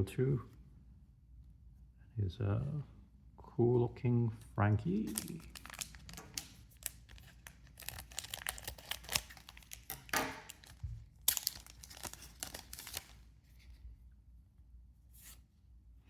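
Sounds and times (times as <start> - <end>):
foil pack tearing: 5.0 - 13.2
foil pack crinkling: 5.0 - 13.4
cards being shuffled: 5.0 - 13.8.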